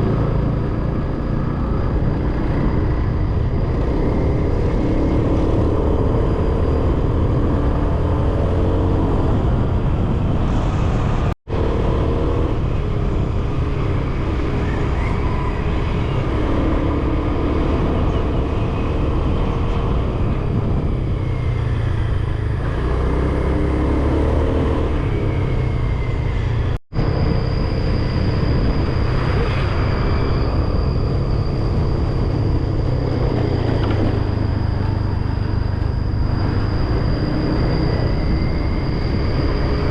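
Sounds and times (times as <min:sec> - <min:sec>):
wind rumble on microphone: 0:00.0 - 0:39.9.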